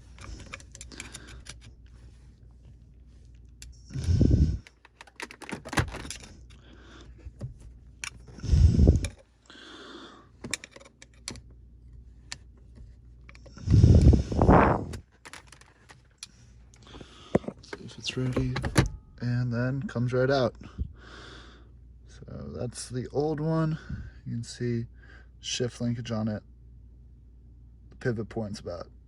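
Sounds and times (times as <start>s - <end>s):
hand tool clicks and scrapes: 0.0s - 1.8s.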